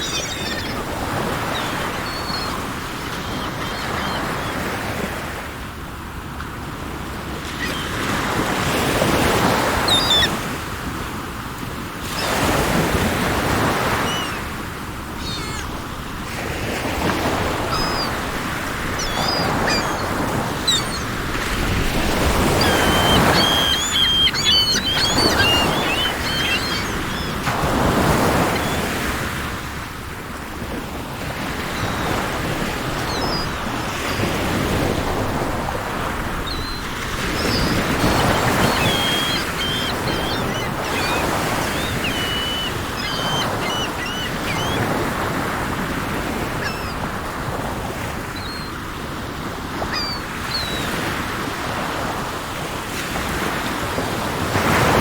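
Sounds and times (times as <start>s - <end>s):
small birds chirping: 0.0s - 4.8s, 9.6s - 10.4s, 13.6s - 16.3s, 16.9s - 29.3s, 31.6s - 34.9s, 36.4s - 47.1s, 48.2s - 48.8s, 49.8s - 51.0s
sea waves breaking on shore: 0.0s - 55.0s.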